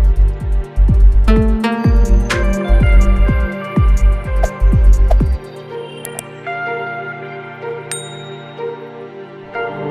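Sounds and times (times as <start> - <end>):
electronic music with deep bass: 0.0 - 7.1.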